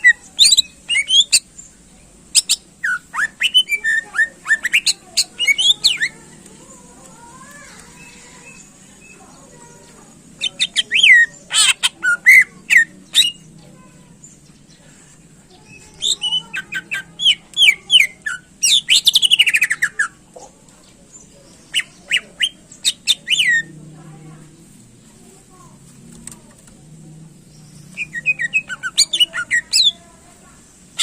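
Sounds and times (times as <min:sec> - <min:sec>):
bird singing whistled phrases: 0:00.4 - 0:01.4, 0:02.4 - 0:06.1, 0:27.9 - 0:29.9.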